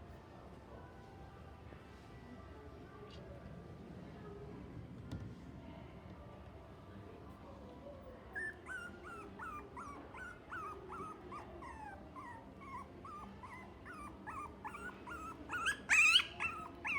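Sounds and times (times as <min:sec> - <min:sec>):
dog whimpering: 0:08.4 - 0:16.9.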